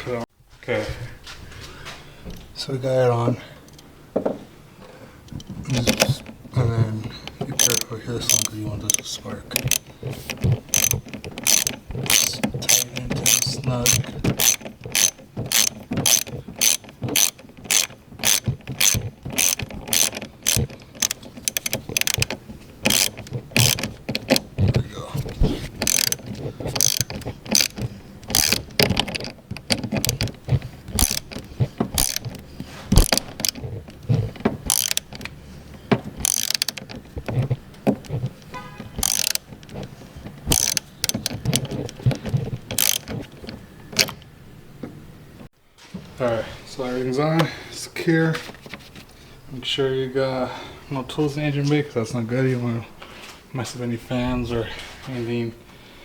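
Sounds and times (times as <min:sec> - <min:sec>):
socket wrench ratchet clicking: 0:07.2 - 0:24.7, 0:25.8 - 0:35.4, 0:36.1 - 0:38.2, 0:39.0 - 0:39.9, 0:40.5 - 0:43.4.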